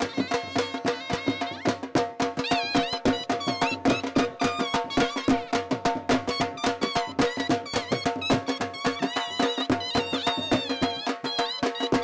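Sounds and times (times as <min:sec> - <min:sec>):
high wavering melody: 0:02.5 - 0:12.0.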